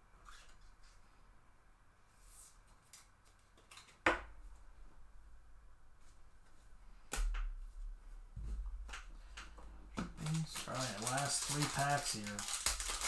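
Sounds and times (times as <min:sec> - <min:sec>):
trading cards handled on table: 0:10.0 - 0:13.0.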